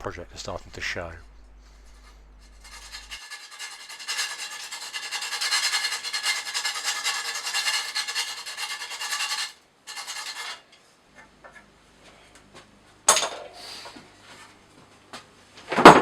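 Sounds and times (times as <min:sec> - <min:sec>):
sanding wood: 0:01.6 - 0:10.6.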